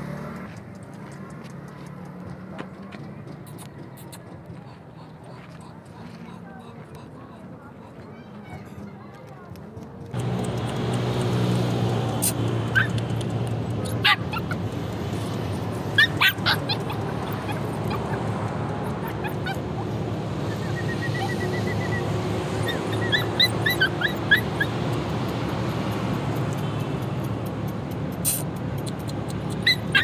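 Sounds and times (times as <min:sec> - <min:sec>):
dogs whining: 0:12.2 - 0:13.0, 0:13.8 - 0:24.8, 0:28.9 - 0:30.0
dogs yipping: 0:12.2 - 0:25.4, 0:28.2 - 0:30.0.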